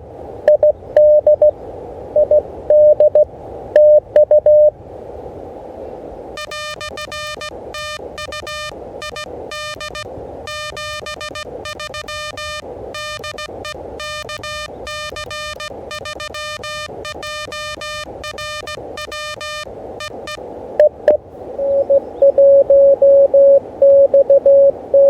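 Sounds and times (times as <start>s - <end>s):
receiver hiss: 0.0s - 4.8s, 6.1s - 25.0s
morse code tone: 0.5s - 1.5s, 2.2s - 3.2s, 3.8s - 4.7s, 6.4s - 25.0s.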